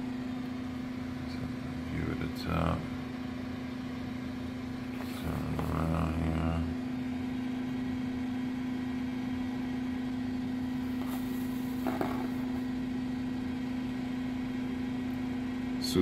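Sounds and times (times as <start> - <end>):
steady low electrical hum: 0.0 - 16.0
faint handling sound: 10.9 - 12.6.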